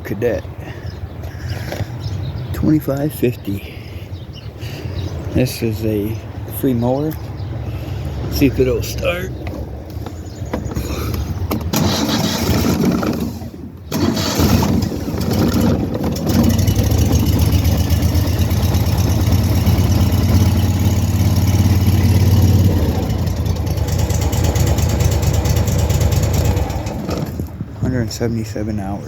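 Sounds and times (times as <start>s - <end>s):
lawnmower engine starting: 10.9s - 27.6s.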